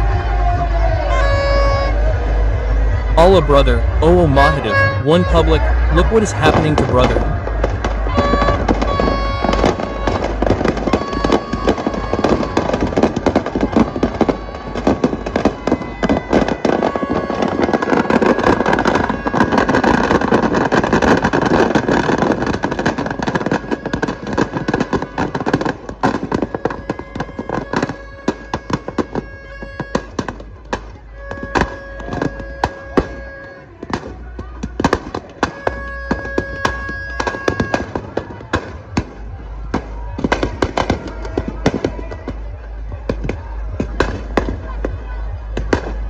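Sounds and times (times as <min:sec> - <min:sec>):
firecrackers cracking: 0:03.2 - 0:46.0.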